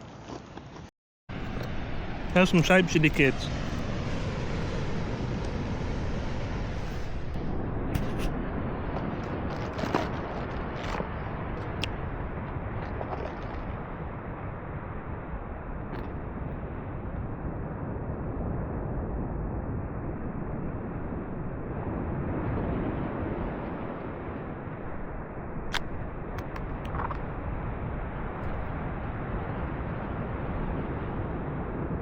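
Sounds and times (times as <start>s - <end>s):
wind: 0.0s - 32.0s
surf rushing: 1.3s - 17.1s.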